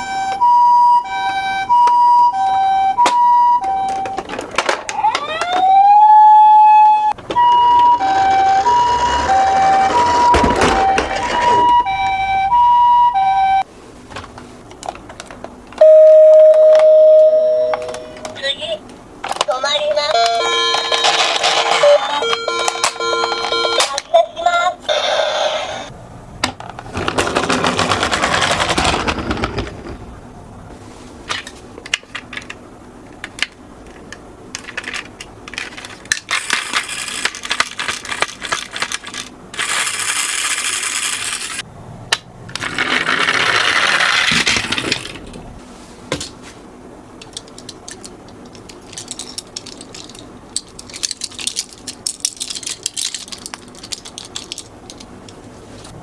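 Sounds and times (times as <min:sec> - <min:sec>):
toy cars rolling down a slope: 0:07.3 - 0:11.9, 0:20.4 - 0:24.0, 0:26.6 - 0:30.1, 0:34.6 - 0:41.6, 0:42.5 - 0:45.4, 0:47.4 - 0:55.1.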